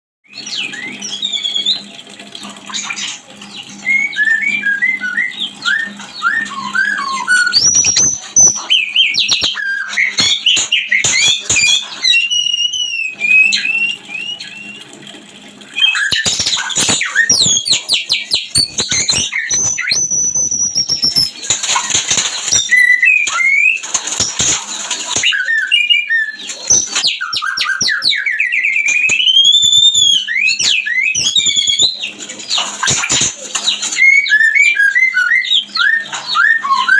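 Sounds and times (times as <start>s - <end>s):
bird singing whistles and trills: 0.3s - 2.0s, 2.7s - 14.9s, 15.7s - 36.9s.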